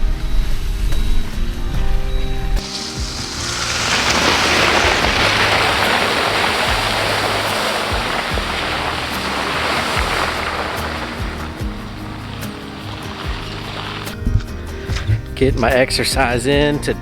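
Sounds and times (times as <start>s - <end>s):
steady rushing hiss: 2.6s - 15.4s.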